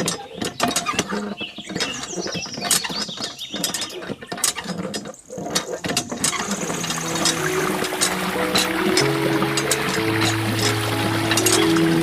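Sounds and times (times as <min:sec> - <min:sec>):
music: 0:06.6 - 0:12.0.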